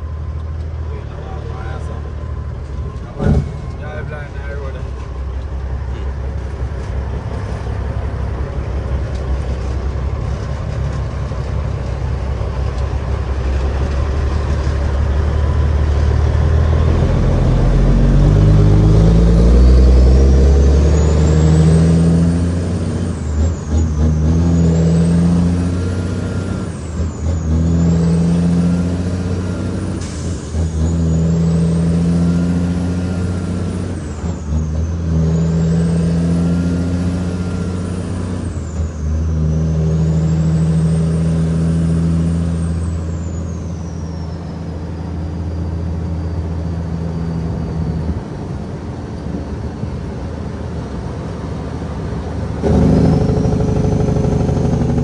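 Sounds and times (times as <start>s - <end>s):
truck diesel engine shifting gears: 0.0s - 55.0s
high turbo whistle: 52.6s - 55.0s.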